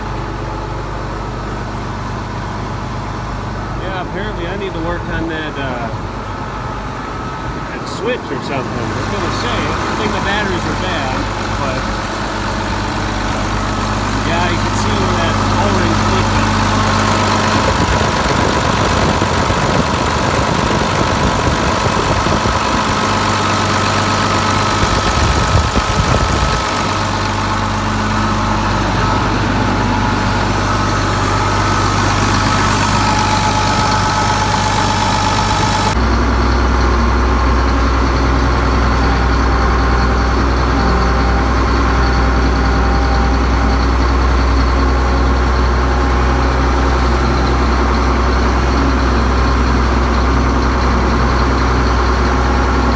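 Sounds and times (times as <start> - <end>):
tractor diesel engine idling: 0.0 - 52.9.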